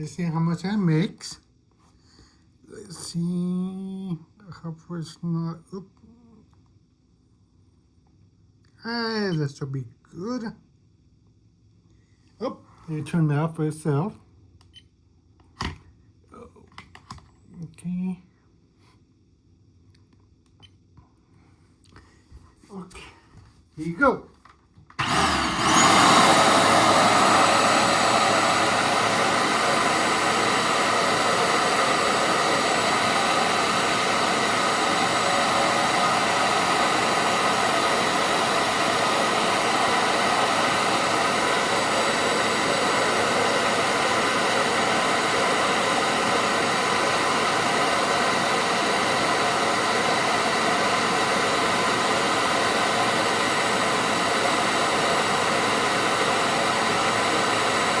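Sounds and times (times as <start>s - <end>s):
vacuum cleaner motor whining: 25.0s - 58.0s.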